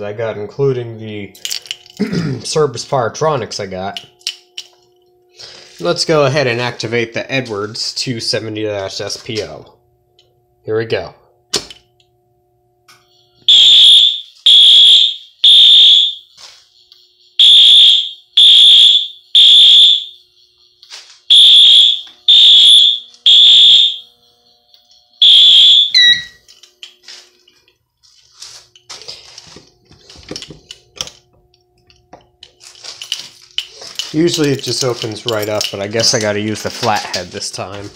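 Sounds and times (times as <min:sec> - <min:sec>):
fire alarm horn blasts: 0:13.0 - 0:26.4
light clicks and rattles: 0:26.4 - 0:37.9.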